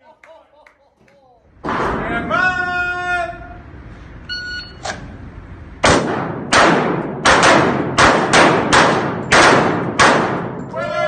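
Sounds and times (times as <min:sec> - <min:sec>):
shot timer beep: 0:04.3 - 0:04.8
pistol shots ringing: 0:05.8 - 0:10.6.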